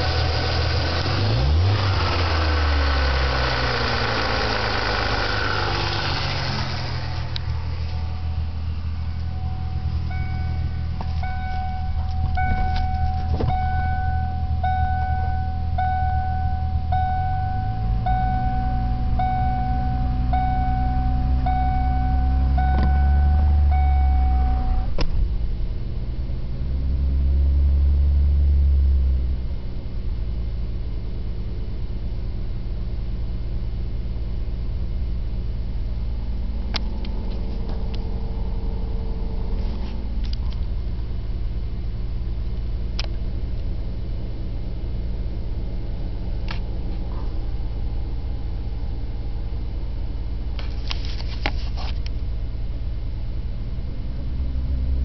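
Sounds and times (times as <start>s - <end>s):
car engine knocking: 0.0s - 15.2s
repeating beep: 9.1s - 24.9s
click: 43.0s - 43.7s.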